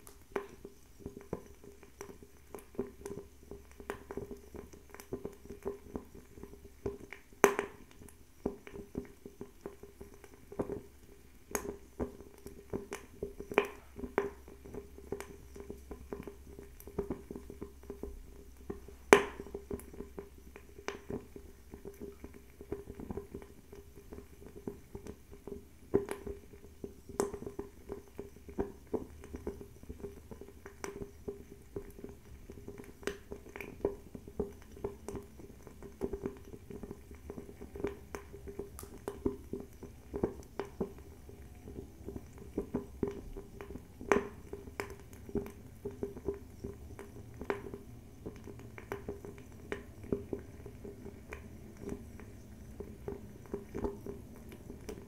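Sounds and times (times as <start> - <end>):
fire crackling and popping: 0.0 - 55.0
low flame hum: 0.0 - 55.0.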